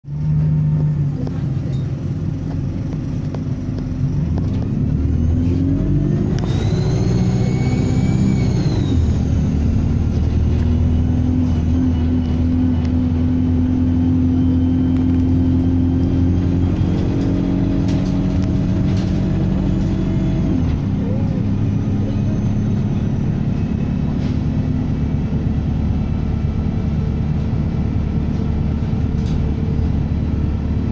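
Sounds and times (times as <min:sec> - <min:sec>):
diesel bus engine under load: 0:00.0 - 0:30.9
turbocharger whistling: 0:05.0 - 0:09.8.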